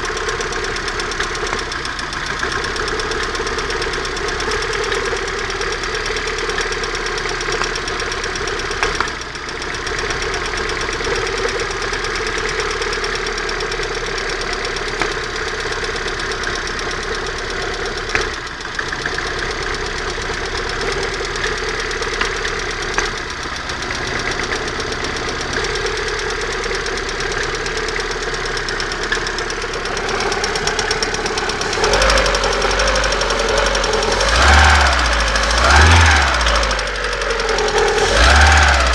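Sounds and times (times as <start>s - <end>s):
car engine idling: 0.0s - 38.9s
engine knocking: 0.0s - 38.9s
low engine rumble: 23.0s - 38.9s.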